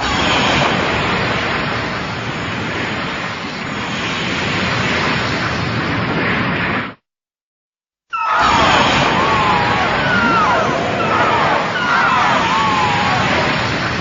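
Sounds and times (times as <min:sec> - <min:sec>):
loud sustained rushing noise: 0:08.2 - 0:14.0.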